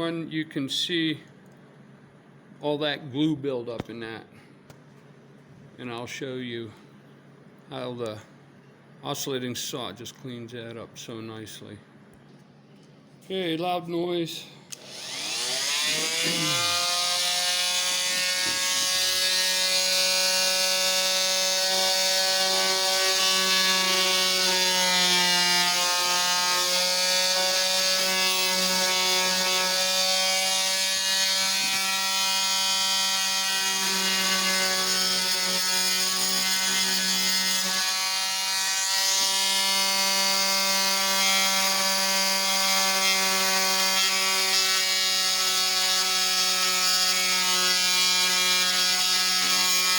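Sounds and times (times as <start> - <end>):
oscillating multi-tool buzzing: 14.7 - 49.9.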